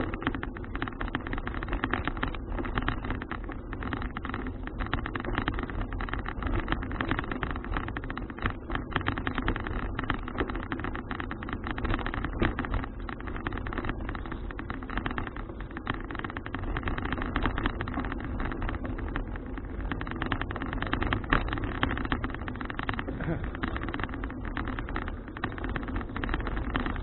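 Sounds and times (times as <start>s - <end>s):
tyre and road noise: 0.0s - 27.0s.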